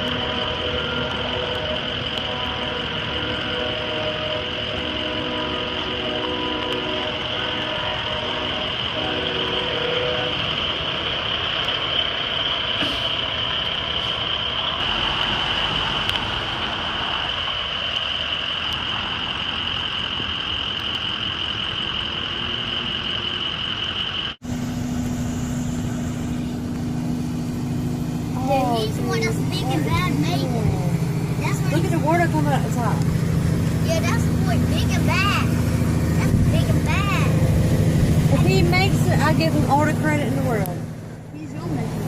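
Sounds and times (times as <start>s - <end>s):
low vehicle engine hum: 0.0s - 42.0s
truck engine running: 0.0s - 42.0s
steady rushing noise: 25.9s - 42.0s.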